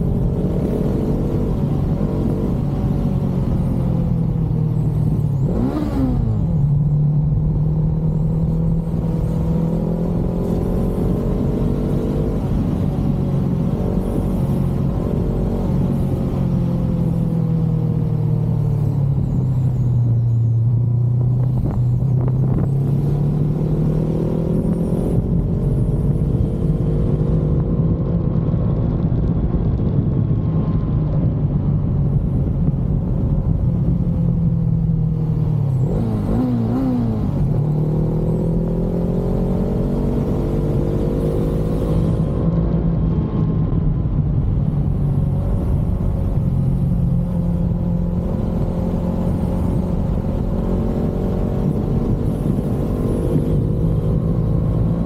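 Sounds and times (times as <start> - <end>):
motorcycle engine cruising: 0.0 - 55.0.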